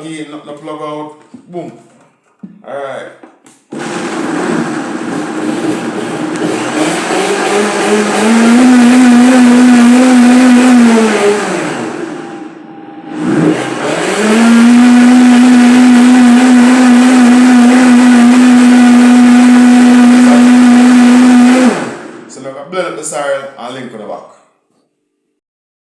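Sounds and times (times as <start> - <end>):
blender motor whining: 3.7 - 22.3.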